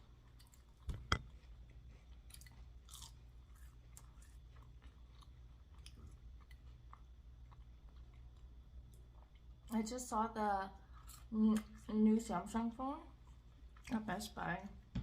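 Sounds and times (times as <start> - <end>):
person chewing food: 0.1 - 9.7.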